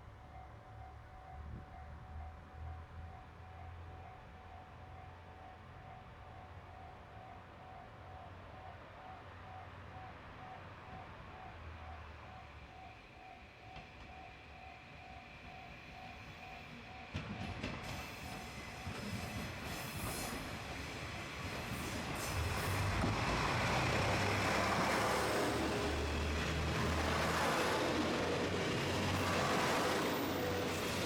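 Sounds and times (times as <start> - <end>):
diesel train passing: 0.0 - 31.0.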